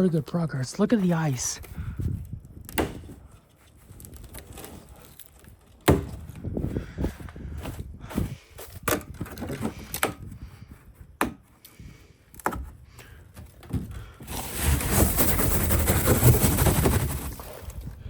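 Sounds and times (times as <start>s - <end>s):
wind gusting on microphone: 1.2s - 4.9s, 6.0s - 11.2s, 13.7s - 18.0s.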